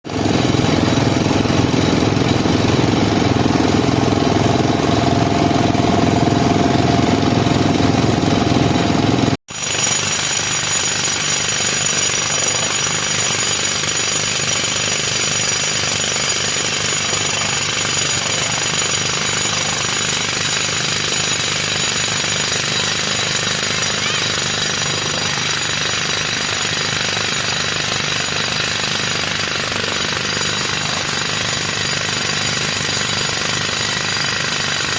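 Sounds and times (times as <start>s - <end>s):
excavator running while digging: 0.0s - 34.9s.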